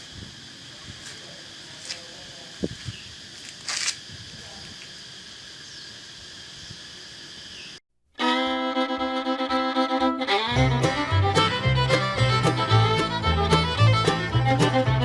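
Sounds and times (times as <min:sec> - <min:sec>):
fiddle music: 0:08.1 - 0:15.0.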